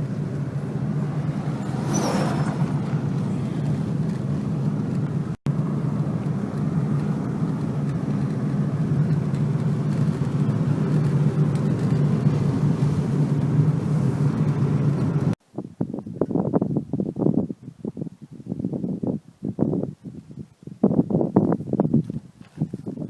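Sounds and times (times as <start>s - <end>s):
car engine and road rumble: 0.0s - 15.5s.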